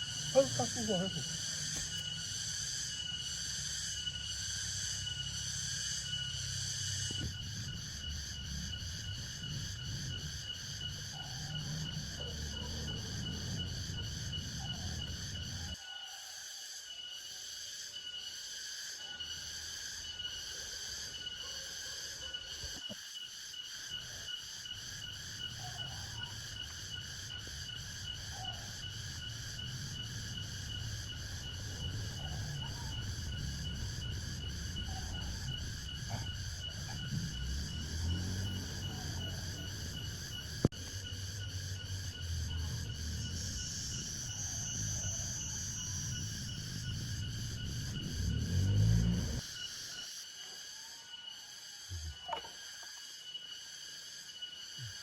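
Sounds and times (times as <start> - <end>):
insect chorus trilling: 0.0 - 55.0
low rumble: 27.3 - 49.4.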